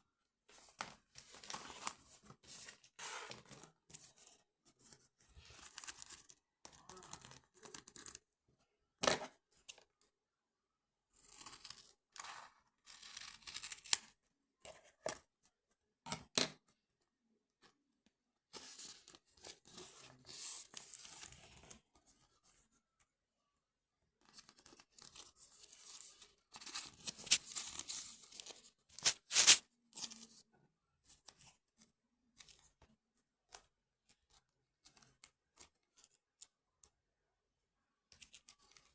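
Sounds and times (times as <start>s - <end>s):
rustling tearing noise: 26.7s - 28.2s, 28.9s - 29.6s.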